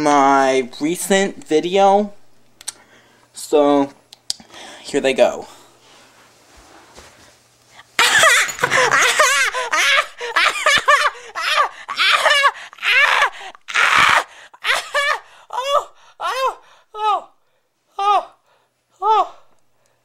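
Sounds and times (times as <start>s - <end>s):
person laughing hard: 8.0s - 16.6s.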